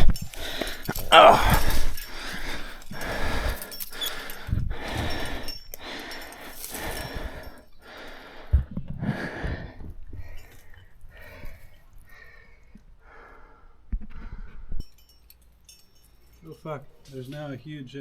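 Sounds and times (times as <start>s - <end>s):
rustling: 0.0s - 8.4s
person breathing hard: 0.0s - 14.7s.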